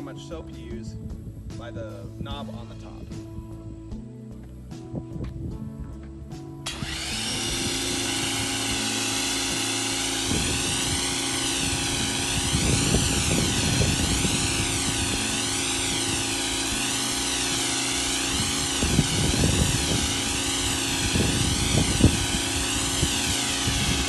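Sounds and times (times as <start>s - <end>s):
pressure washer motor and pump whine: 6.6s - 24.0s.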